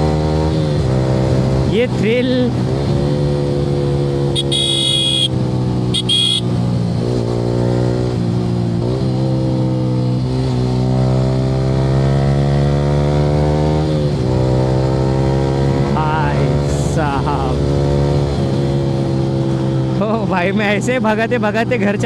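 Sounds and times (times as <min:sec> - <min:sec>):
motorcycle engine revving: 0:02.5 - 0:15.8
short high-pitched beeps: 0:04.4 - 0:05.3, 0:06.0 - 0:06.4.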